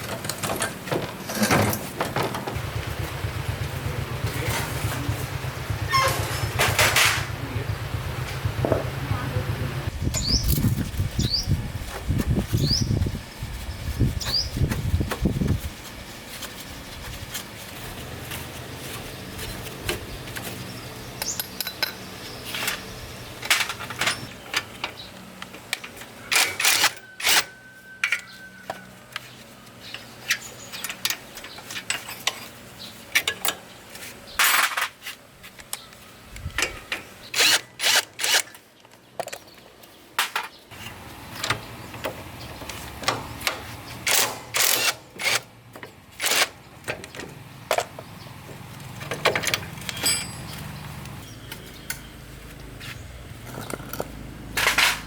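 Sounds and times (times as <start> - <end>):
tools clicking and knocking on parts: 0.0 - 2.6, 19.8 - 29.3, 29.9 - 52.1, 53.4 - 55.0.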